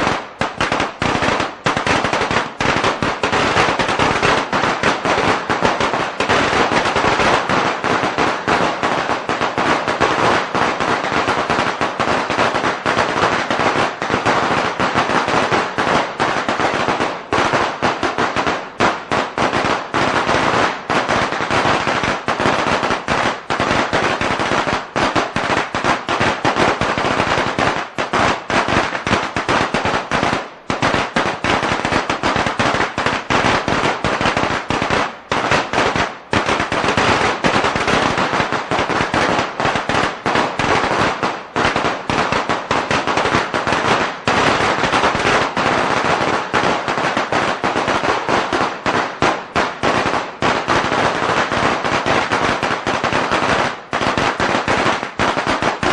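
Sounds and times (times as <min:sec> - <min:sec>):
firecrackers crackling: 0:00.0 - 0:55.9.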